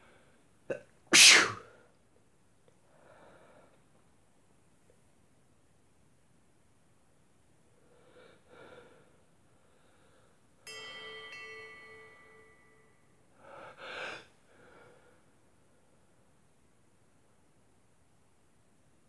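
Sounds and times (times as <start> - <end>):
person sneezing: 1.1 - 1.6
bright ringing tone: 10.7 - 13.2.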